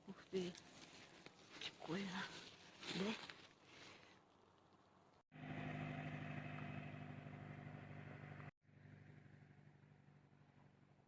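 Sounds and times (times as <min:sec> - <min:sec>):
engine running steadily: 0:05.4 - 0:11.0.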